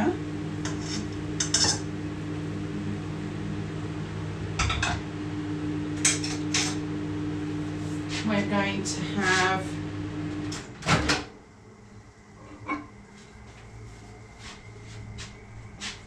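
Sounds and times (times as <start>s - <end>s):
steady low hum: 0.0s - 16.0s
utensils clinking on a plate: 6.0s - 6.8s.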